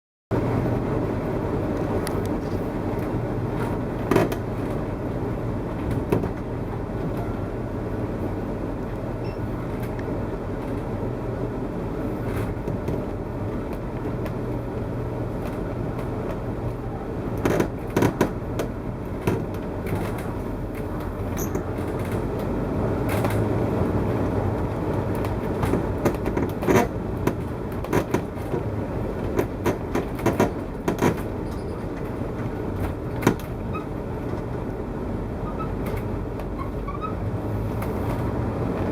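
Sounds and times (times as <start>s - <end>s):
vehicle road rumble: 0.3s - 38.9s
loud creaks and cracks: 25.1s - 34.5s.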